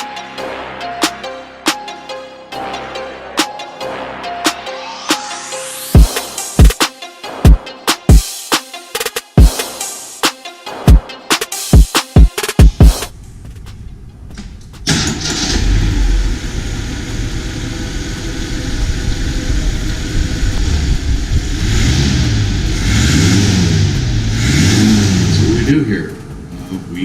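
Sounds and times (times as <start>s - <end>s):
car engine starting and revving: 14.8s - 27.0s.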